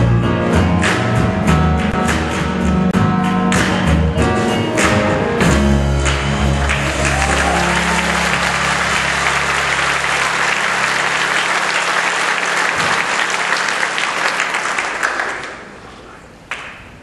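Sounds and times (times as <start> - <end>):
audience applauding: 5.9 - 17.0.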